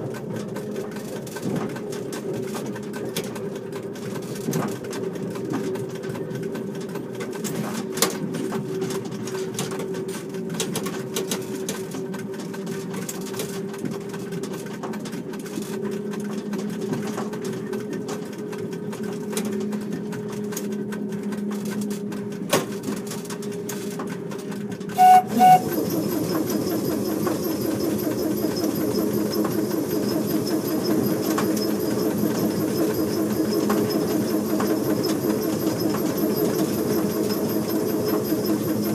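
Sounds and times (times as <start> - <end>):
wheels clicking on rails: 0.0 - 38.9
train horn toots: 25.0 - 25.8
electric train motor hum: 25.0 - 38.9.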